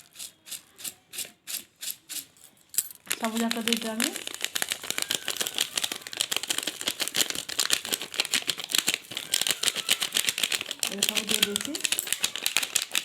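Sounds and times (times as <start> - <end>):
soup packet crinkling: 3.0 - 13.0.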